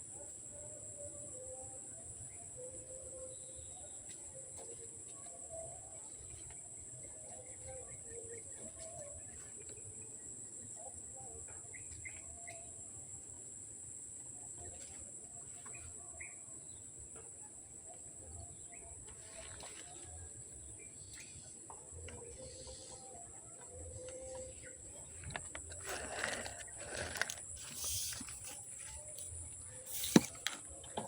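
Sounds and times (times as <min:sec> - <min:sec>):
high-pitched insect drone: 0:25.4 - 0:30.4.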